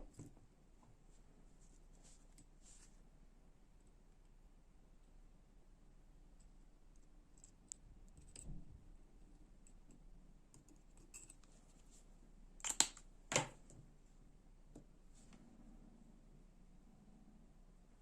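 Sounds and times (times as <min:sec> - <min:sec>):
light metal clicks and scrapes: 0:10.6 - 0:11.6.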